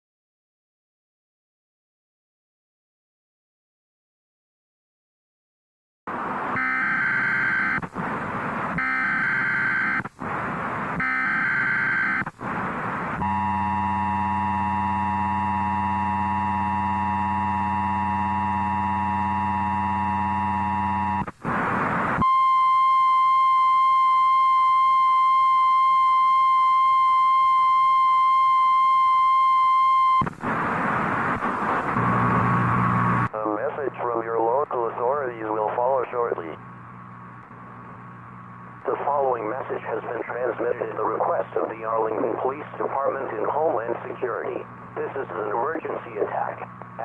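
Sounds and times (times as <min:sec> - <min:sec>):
noisy burst: 0:06.1 - 0:22.3, 0:30.2 - 0:47.0
high steady alarm tone: 0:06.6 - 0:07.8, 0:08.8 - 0:10.0, 0:11.0 - 0:12.3, 0:13.2 - 0:21.2.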